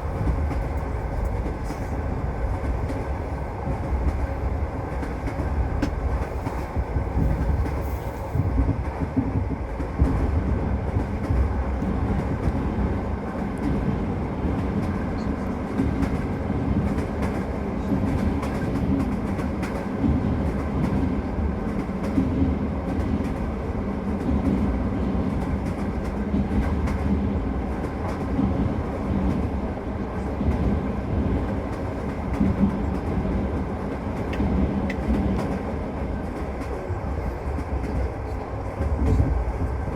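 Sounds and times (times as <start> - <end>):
train wheels rumbling on track: 0.0 - 39.9.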